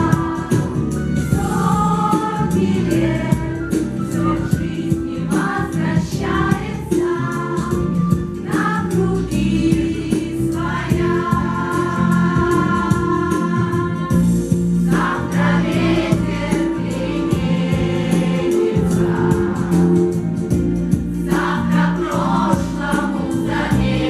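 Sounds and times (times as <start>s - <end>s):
instrumental backing track with beat: 0.0s - 24.0s
choir singing: 1.4s - 20.4s, 21.2s - 24.0s.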